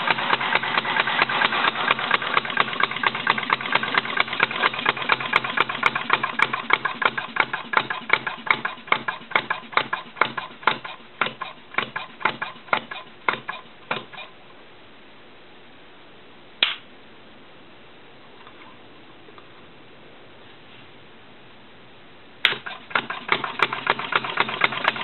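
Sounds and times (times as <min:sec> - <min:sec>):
gasoline engine running down: 0:00.0 - 0:14.2, 0:22.6 - 0:25.0
sharp click: 0:16.6 - 0:16.9.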